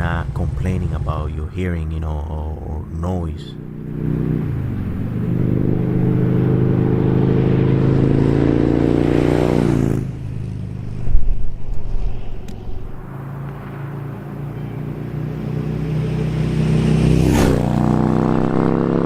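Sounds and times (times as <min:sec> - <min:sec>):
motorcycle idling: 0:00.0 - 0:02.6
motorcycle engine revving: 0:03.4 - 0:19.0.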